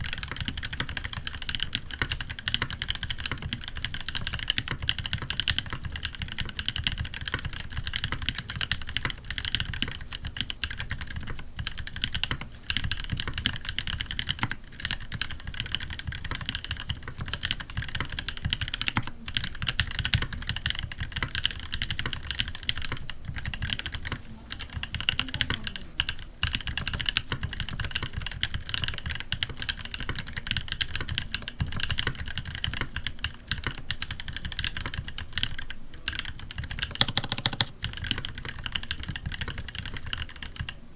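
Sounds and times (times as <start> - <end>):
fast mechanical keyboard typing: 0.0 - 40.9.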